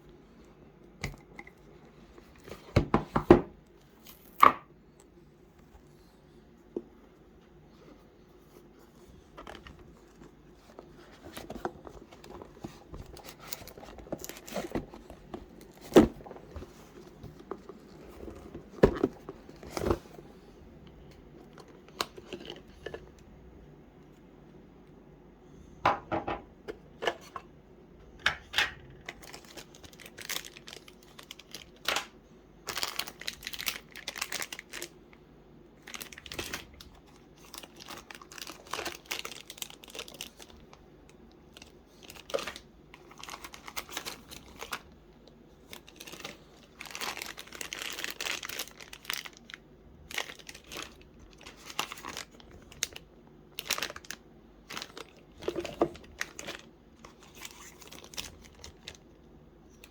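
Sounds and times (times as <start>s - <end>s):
packaging crinkling and tearing: 9.4s - 20.2s, 29.1s - 35.1s, 35.8s - 59.9s.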